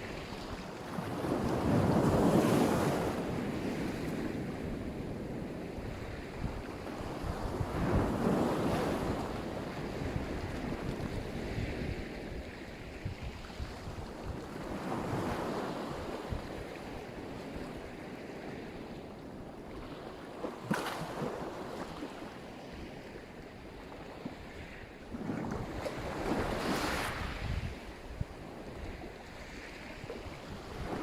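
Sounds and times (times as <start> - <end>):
waves washing onto shore: 0.0 - 31.0
wind rumbling on microphone: 0.0 - 31.0
surf washing onto shore: 24.9 - 31.0.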